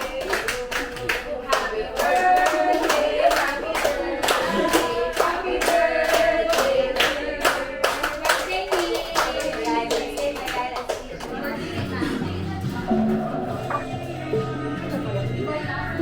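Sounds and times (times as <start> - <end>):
rhythmic hand clapping: 0.0 - 12.2
people singing together: 0.0 - 16.0.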